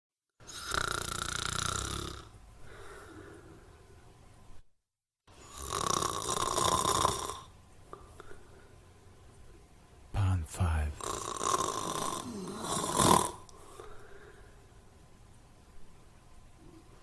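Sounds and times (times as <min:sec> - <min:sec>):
person snoring: 0:00.5 - 0:02.3, 0:05.4 - 0:07.5, 0:10.6 - 0:13.4
quiet breath: 0:02.6 - 0:04.0, 0:07.9 - 0:09.1, 0:13.5 - 0:14.8.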